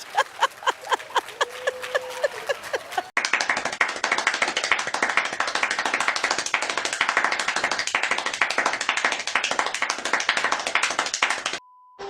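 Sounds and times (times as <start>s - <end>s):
crowd applauding: 0.0s - 11.6s.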